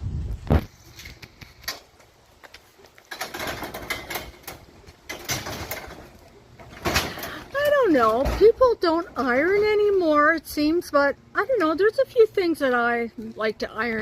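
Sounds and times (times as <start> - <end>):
rattling metal clatter: 3.0 - 10.3.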